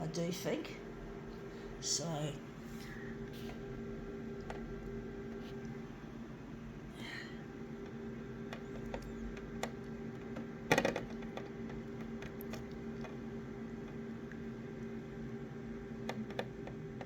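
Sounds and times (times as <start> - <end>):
photocopier humming: 0.0 - 17.0.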